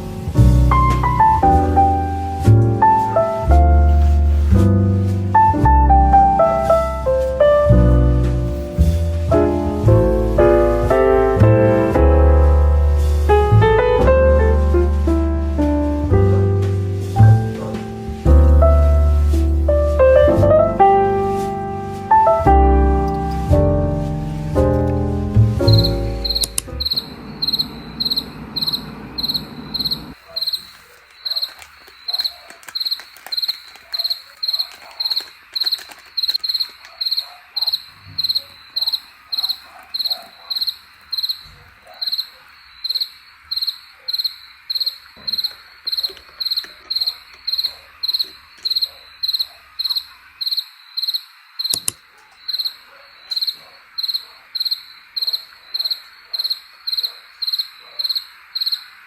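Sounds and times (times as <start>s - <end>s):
background music: 0.0s - 26.9s
cricket chirping: 24.6s - 59.0s.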